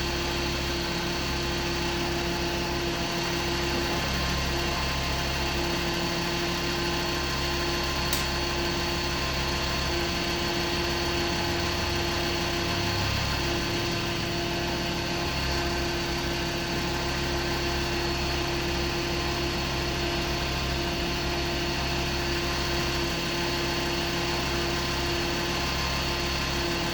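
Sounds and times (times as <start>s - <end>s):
sharp click: 8.1s - 8.5s.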